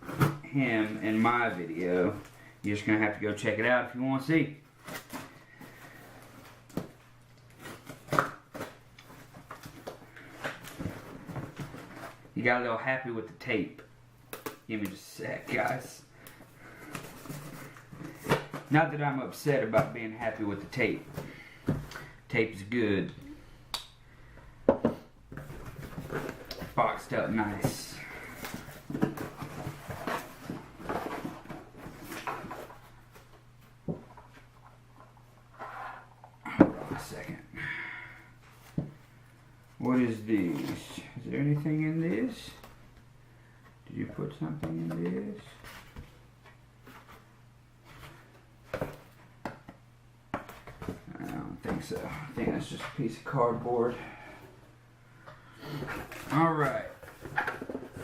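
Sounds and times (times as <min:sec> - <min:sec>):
cardboard rustling and scraping: 0:25.3 - 0:33.4, 0:55.7 - 0:58.0.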